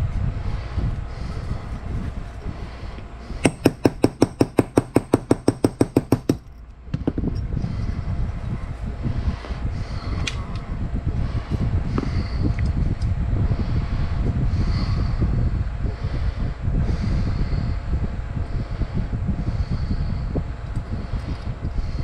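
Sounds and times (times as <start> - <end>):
low rumbling background: 0.0 - 22.0
rapid sharp metallic clicks: 3.4 - 6.5.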